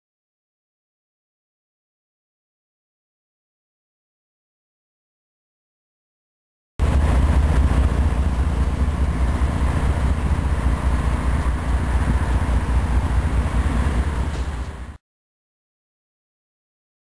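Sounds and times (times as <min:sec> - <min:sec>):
heavy engine deep rumble: 0:06.8 - 0:15.0.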